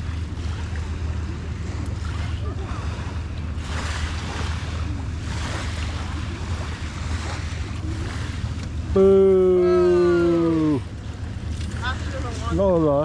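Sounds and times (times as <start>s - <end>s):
small waves washing on beach: 0.0s - 13.0s
person calling out loudly: 9.0s - 10.8s.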